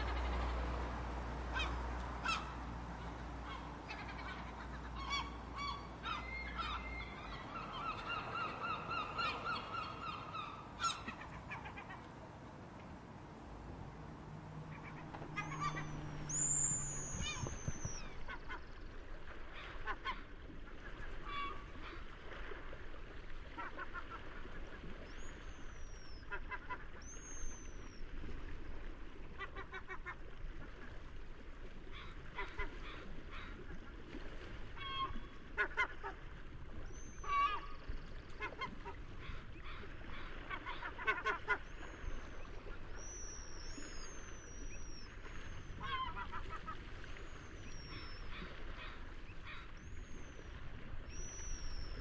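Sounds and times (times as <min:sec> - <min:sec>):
seagulls calling: 0:00.0 - 0:12.1, 0:14.6 - 0:18.9, 0:34.8 - 0:36.2, 0:36.9 - 0:52.0.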